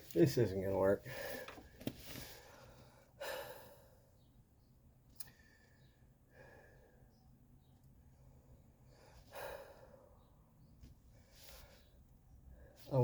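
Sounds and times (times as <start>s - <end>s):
man breathing: 1.0s - 4.1s, 5.2s - 7.1s, 8.8s - 10.2s.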